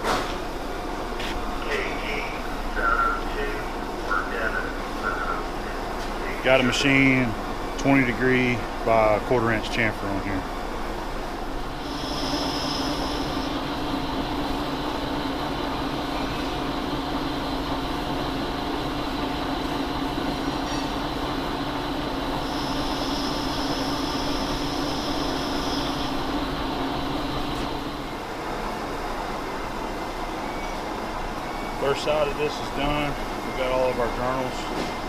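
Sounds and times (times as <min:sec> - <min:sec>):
lathe mechanical hum: 0:00.0 - 0:35.0
high thin whine: 0:22.4 - 0:28.1.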